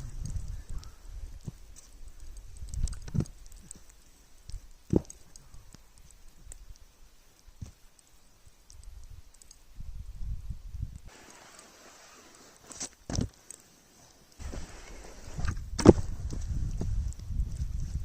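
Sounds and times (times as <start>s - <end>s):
wind rumble on microphone: 0.0s - 3.7s, 8.8s - 11.1s, 14.4s - 18.0s
board knocks and thumps on snow: 4.9s - 5.2s, 11.1s - 13.4s, 14.4s - 18.0s
footsteps on snow: 14.4s - 18.0s.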